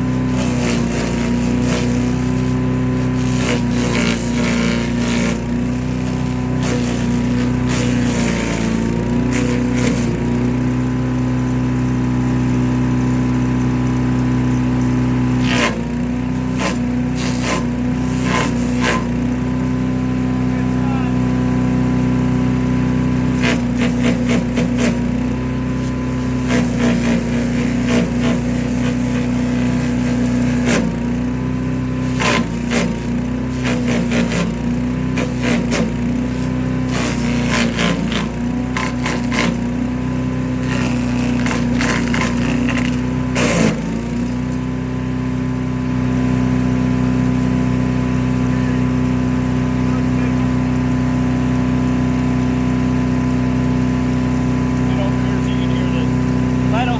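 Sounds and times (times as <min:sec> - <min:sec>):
chipper engine running: 0:00.0 - 0:56.9
branches cracking in chipper: 0:00.2 - 0:10.7, 0:14.6 - 0:19.4, 0:23.2 - 0:31.2, 0:31.8 - 0:44.8.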